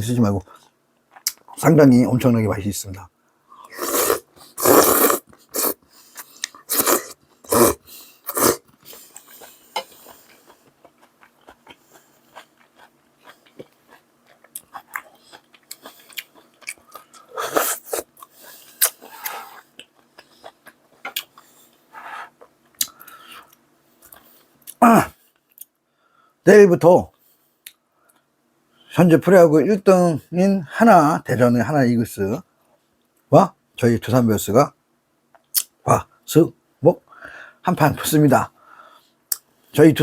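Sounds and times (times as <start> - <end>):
person crunching food: 3.7 - 21.6
mouth clicks: 35.3 - 35.7.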